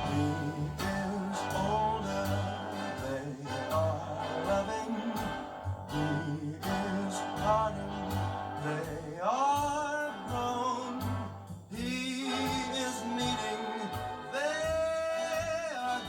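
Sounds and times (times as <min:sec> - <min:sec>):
guitar and band accompaniment: 0:00.0 - 0:16.0
man singing: 0:00.0 - 0:16.0.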